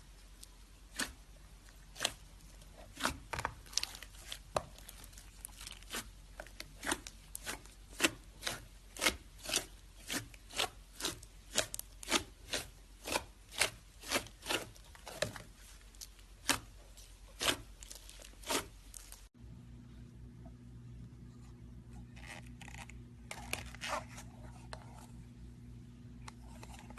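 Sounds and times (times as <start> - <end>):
steady low hum: 12.7 - 26.9.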